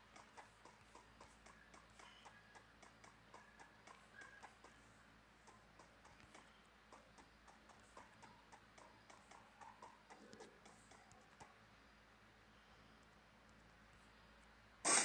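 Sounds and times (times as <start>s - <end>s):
small sharp ticks: 0.0s - 11.6s.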